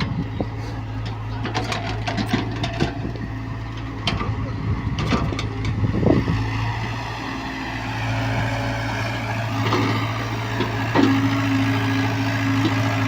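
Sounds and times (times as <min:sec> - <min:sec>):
excavator diesel engine running: 0:00.0 - 0:13.0
knocks and clanks: 0:01.0 - 0:03.2, 0:09.6 - 0:11.4.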